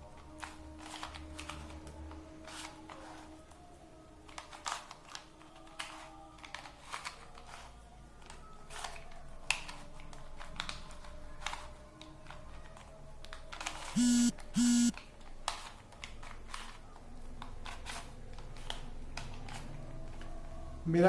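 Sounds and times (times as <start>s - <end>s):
puzzle cube plastic clicks: 4.3s - 7.7s.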